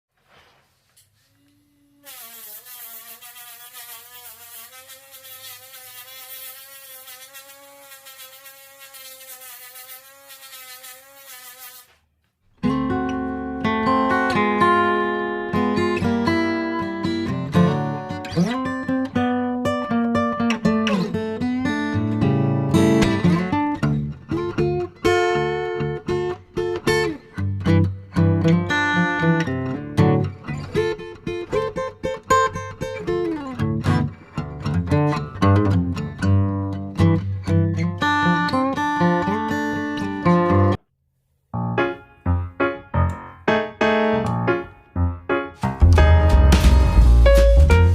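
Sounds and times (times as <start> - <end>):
acoustic guitar music: 12.6 - 40.8, 41.6 - 47.9.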